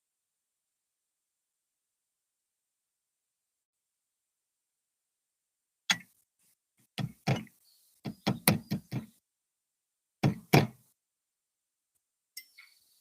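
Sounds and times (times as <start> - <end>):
woodpecker hammering wood: 7.0 - 9.2, 10.2 - 10.9.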